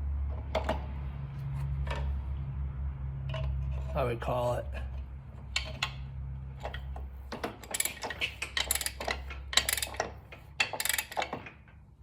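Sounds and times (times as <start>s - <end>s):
hand tools clicking on metal: 7.4s - 11.5s.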